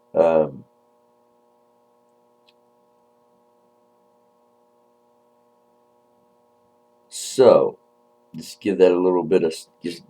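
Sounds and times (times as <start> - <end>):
faint hum: 0.0 - 10.0.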